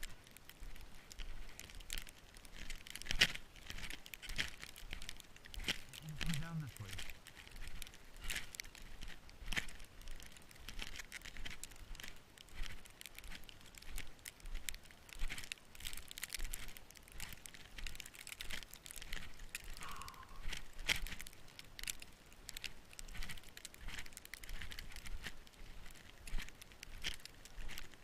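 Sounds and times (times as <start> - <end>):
footsteps crunching in snow: 0.0 - 28.0.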